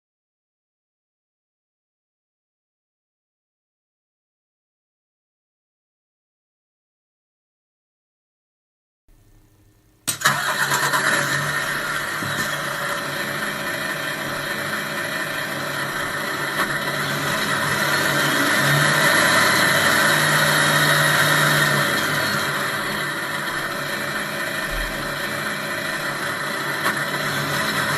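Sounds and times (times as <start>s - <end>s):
simulated diesel truck engine: 10.1s - 27.9s.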